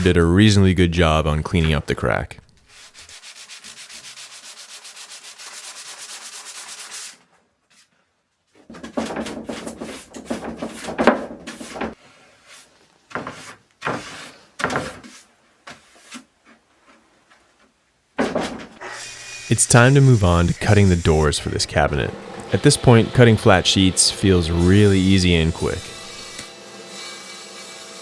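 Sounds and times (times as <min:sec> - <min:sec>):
sandpaper rubbing on wood: 0:02.7 - 0:07.2, 0:19.4 - 0:21.8, 0:22.6 - 0:26.4.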